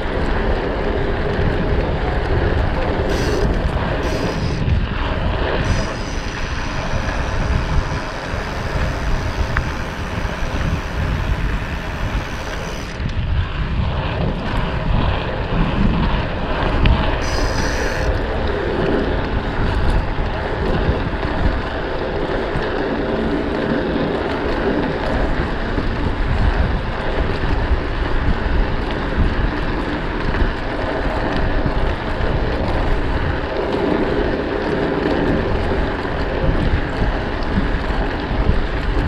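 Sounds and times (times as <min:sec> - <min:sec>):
wind buffeting microphone: 0:00.0 - 0:39.0
faint high hiss: 0:05.7 - 0:12.9, 0:17.2 - 0:18.1.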